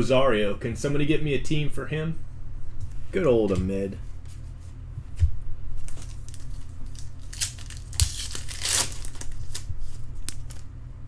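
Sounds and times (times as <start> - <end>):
steady low hum: 0.0 - 11.0
wrapper crinkling and tearing: 5.9 - 10.7.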